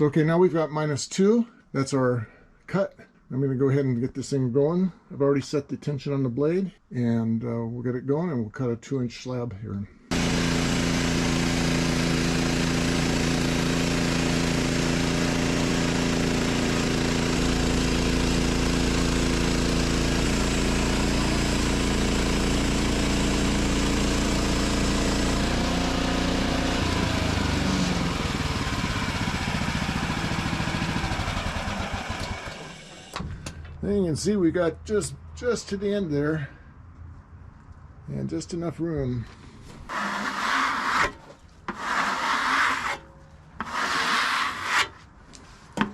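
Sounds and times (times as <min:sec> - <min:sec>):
bandsaw blade cutting log: 0:10.1 - 0:33.2, 0:39.8 - 0:45.1
sawmill gas engine running: 0:10.1 - 0:33.8, 0:39.2 - 0:41.1, 0:43.6 - 0:44.9.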